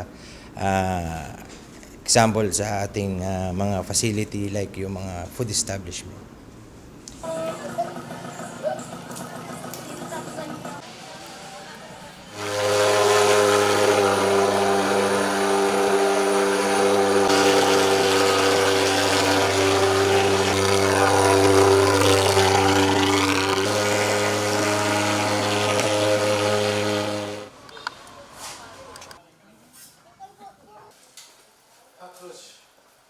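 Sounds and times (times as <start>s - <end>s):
fogging machine engine drone: 12.3s - 27.6s.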